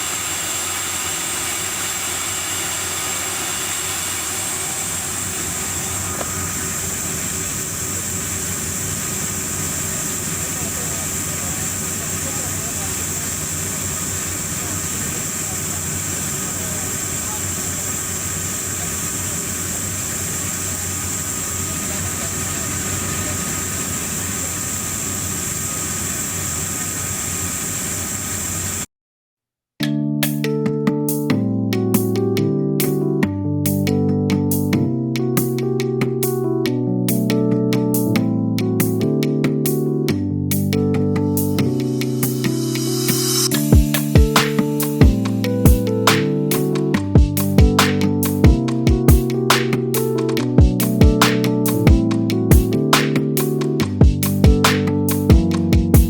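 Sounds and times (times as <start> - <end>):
gas turbine high whine: 0.0 - 28.9.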